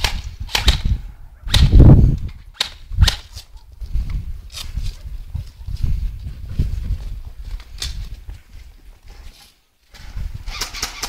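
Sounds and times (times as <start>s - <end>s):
airsoft gun shots: 0.0s - 0.9s, 1.5s - 1.8s.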